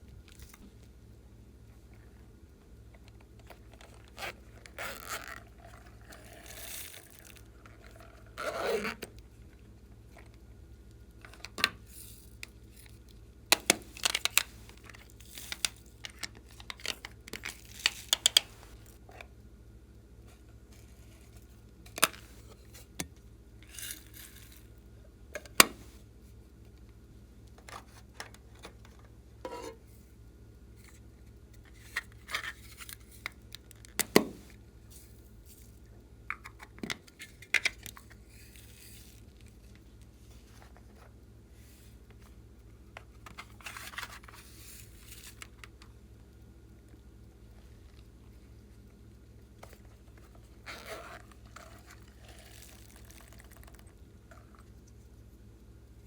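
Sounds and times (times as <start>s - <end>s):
crinkly rustles: 3.0s - 10.4s, 11.2s - 19.2s, 30.8s - 46.0s, 46.9s - 55.3s.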